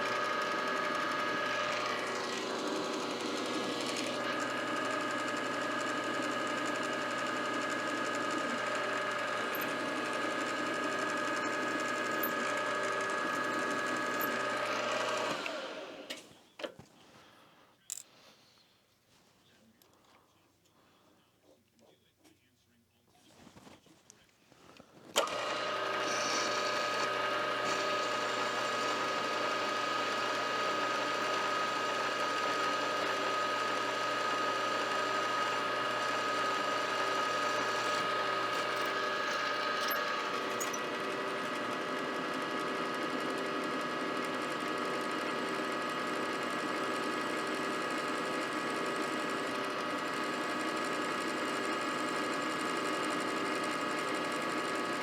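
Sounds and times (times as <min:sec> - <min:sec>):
milling machine whining: 0:00.0 - 0:16.2, 0:25.1 - 0:55.0.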